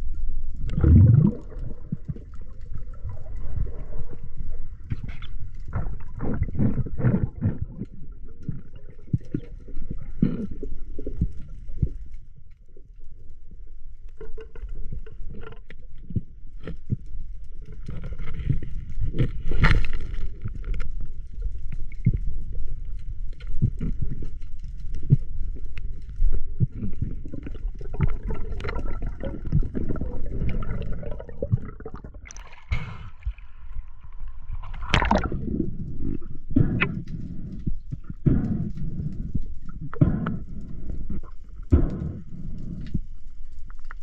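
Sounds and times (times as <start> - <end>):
water gurgling and sloshing: 0.0 - 44.0
low rumble: 21.9 - 44.0.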